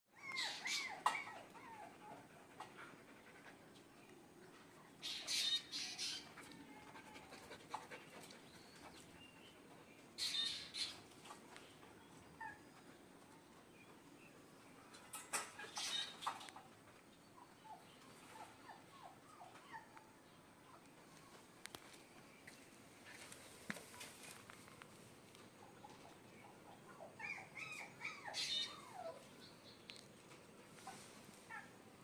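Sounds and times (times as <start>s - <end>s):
puppy whining and yelping: 0.1s - 2.1s, 12.3s - 12.8s, 17.6s - 20.1s, 26.9s - 29.3s.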